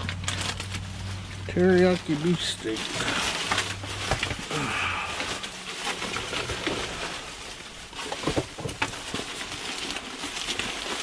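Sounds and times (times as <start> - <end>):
packages clicking and knocking: 0.0 - 11.0
plastic packaging rustling: 0.0 - 11.0.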